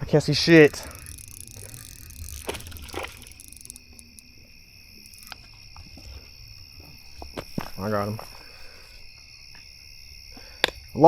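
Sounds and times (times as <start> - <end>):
low rumbling handling or wind noise: 0.0 - 8.3
crickets chirping: 0.0 - 11.0.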